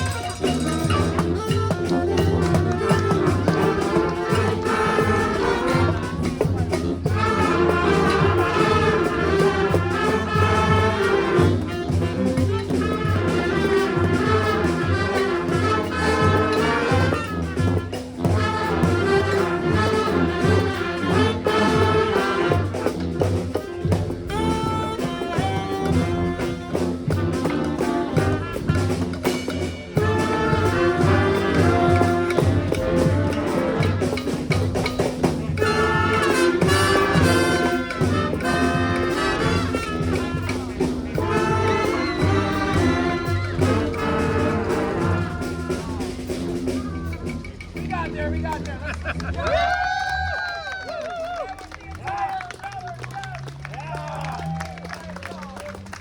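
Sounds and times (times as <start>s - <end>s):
brass band playing: 0.0s - 56.0s
percussion beat: 0.0s - 56.0s.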